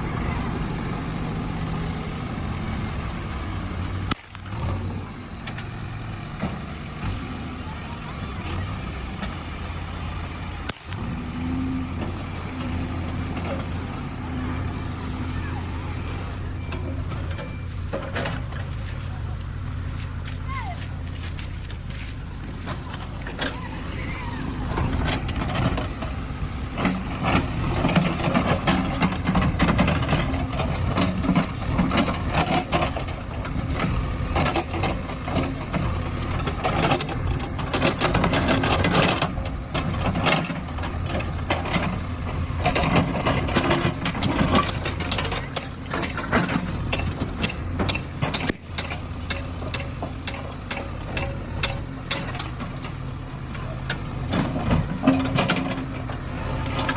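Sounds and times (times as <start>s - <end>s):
heavy diesel machinery running: 0.0s - 56.9s
knocks and clatter: 16.7s - 18.8s, 24.7s - 56.9s.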